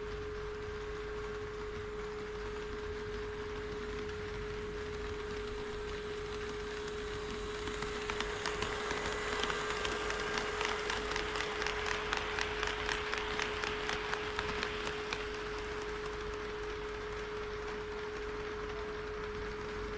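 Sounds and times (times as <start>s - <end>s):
model train wheels clicking: 1.6s - 19.9s.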